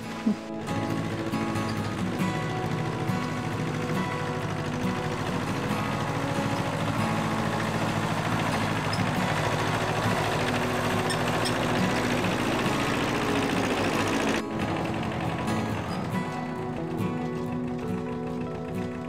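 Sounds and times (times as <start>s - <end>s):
tractor engine running: 0.0s - 19.0s.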